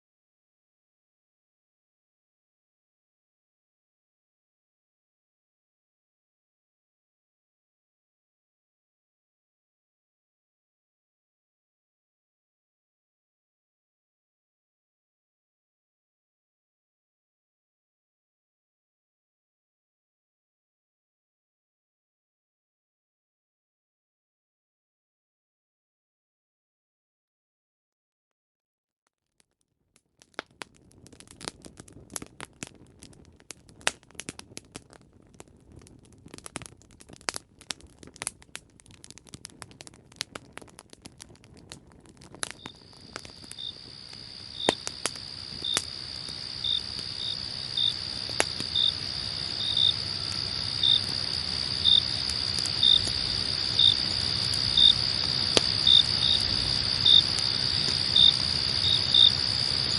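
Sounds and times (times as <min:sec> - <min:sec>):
campfire crackling and popping: 0:29.4 - 0:59.9
crickets chirping: 0:42.5 - 0:59.9.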